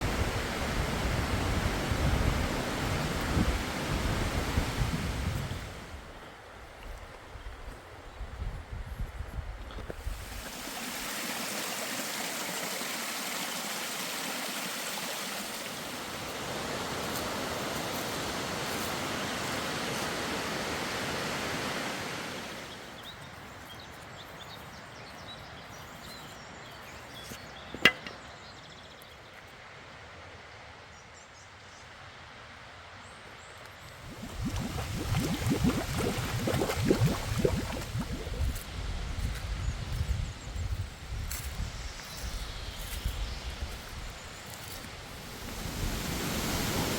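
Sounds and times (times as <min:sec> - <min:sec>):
stream water rushing: 0:00.0 - 0:06.2, 0:10.0 - 0:23.0, 0:33.8 - 0:38.8, 0:44.6 - 0:46.9.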